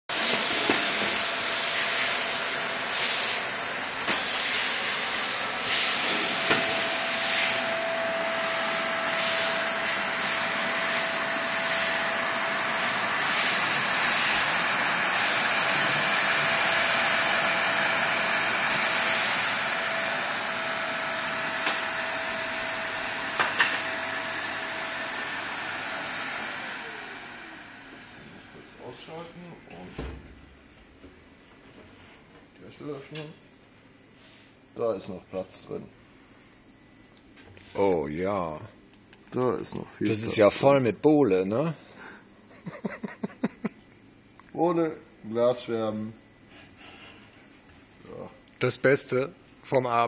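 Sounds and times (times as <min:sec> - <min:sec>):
vacuum cleaner running: 0:00.1 - 0:29.6.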